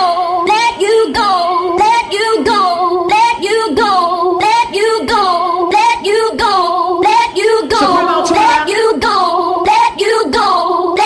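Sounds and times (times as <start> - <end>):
hardcore dance music: 7.8 - 8.9
high female vocal phrase: 7.8 - 9.0.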